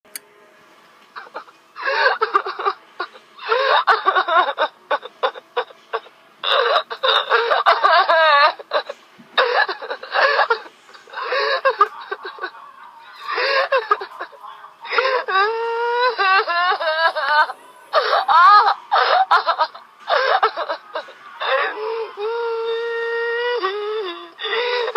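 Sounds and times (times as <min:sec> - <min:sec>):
woman sobbing: 0:01.2 - 0:24.9
woman wailing: 0:14.9 - 0:24.9.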